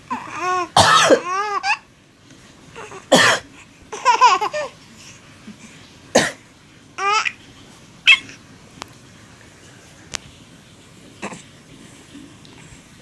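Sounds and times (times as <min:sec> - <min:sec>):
man coughing: 0:00.8 - 0:01.3, 0:03.1 - 0:03.4.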